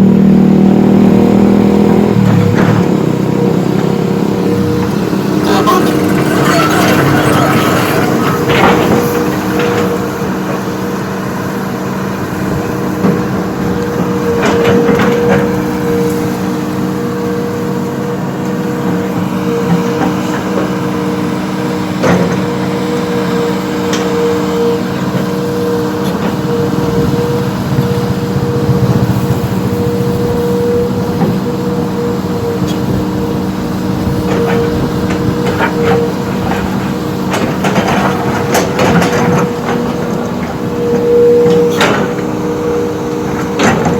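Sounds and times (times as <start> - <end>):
diesel engine running: 0.0 - 43.9
metal clanks and knocks: 4.7 - 10.9, 34.2 - 42.3, 43.4 - 43.9.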